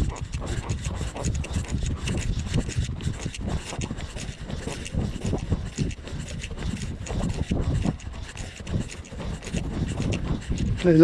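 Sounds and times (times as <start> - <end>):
horse hoofbeats: 0.0 - 11.0.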